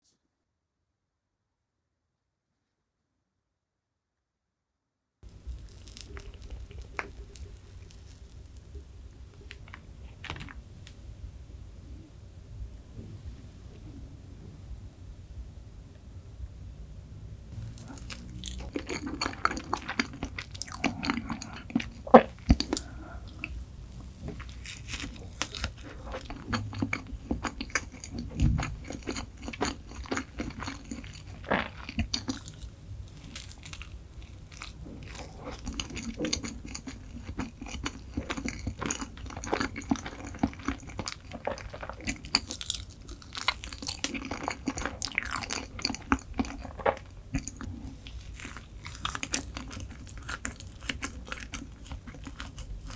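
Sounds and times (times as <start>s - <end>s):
crisp crunches: 5.3s - 8.8s, 17.6s - 23.6s, 24.2s - 52.9s
person chewing with wet mouth sounds: 5.3s - 10.6s, 17.5s - 52.9s.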